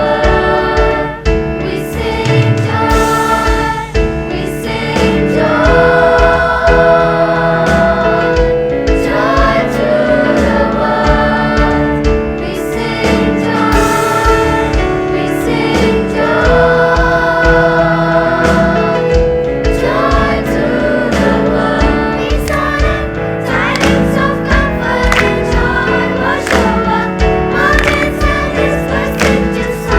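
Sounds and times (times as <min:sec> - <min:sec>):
choir singing in harmony: 0:00.0 - 0:29.9
steady percussive beat: 0:00.2 - 0:07.1, 0:13.1 - 0:17.8, 0:21.3 - 0:29.9.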